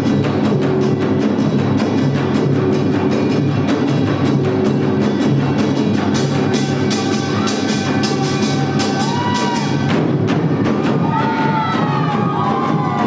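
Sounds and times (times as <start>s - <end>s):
fast drumming: 0.0s - 13.0s.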